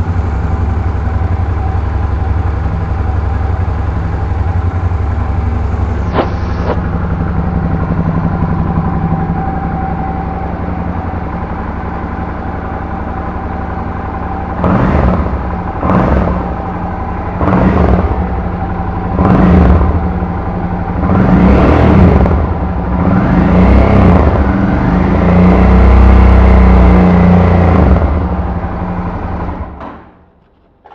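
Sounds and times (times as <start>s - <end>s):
motorcycle throttle blips: 0.0s - 24.5s
motorcycle engine idling: 0.0s - 25.2s, 26.8s - 30.9s.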